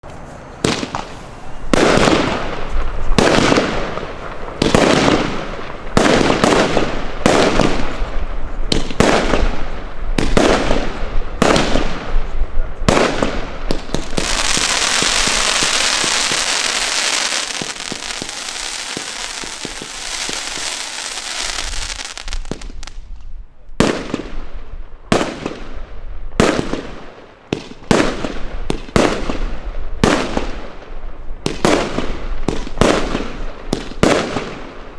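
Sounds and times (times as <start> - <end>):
trailing hiss: 0.0 - 6.0, 13.8 - 22.9
dense crackling hiss: 0.0 - 8.7, 13.4 - 23.1
firework cake bangs: 12.9 - 22.8.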